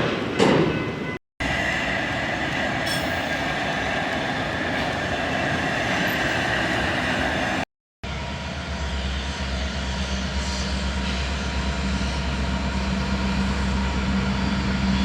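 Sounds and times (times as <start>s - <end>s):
freight train cars rumbling: 0.0s - 15.0s
high squeal from train wheels: 0.7s - 7.6s.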